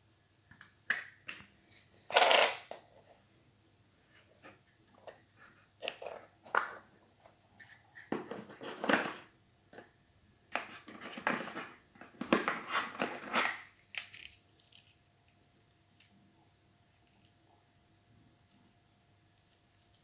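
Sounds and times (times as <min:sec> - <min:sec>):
crinkling and rustling handling noise: 0:04.0 - 0:16.2.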